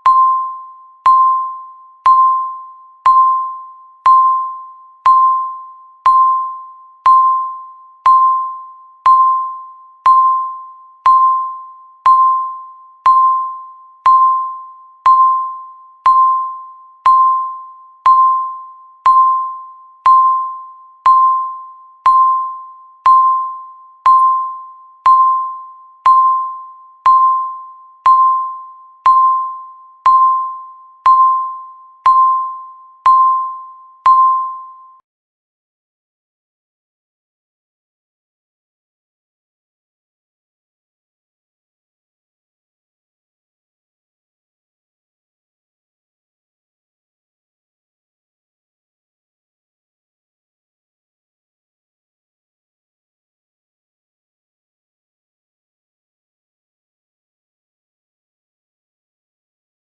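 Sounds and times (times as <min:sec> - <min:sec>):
countdown timer beeping: 0:00.0 - 0:35.0.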